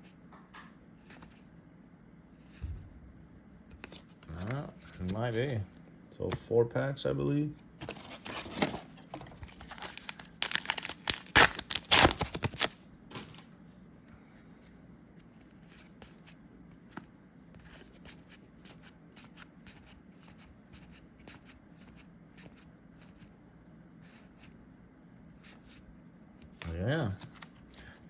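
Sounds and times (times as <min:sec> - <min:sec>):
card pack crinkling and tearing: 0:07.8 - 0:13.5.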